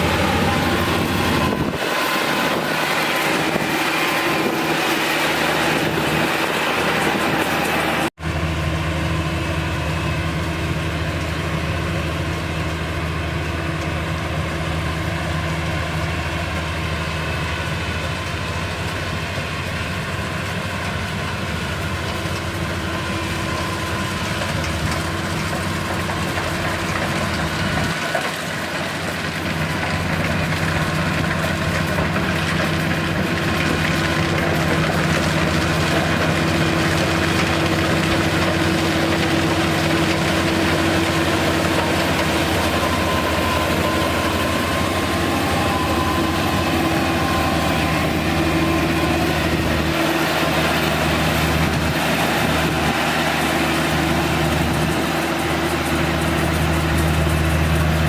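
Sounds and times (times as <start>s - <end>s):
diesel engine running under load: 0.0s - 58.0s
harvester machinery noise: 0.0s - 58.0s.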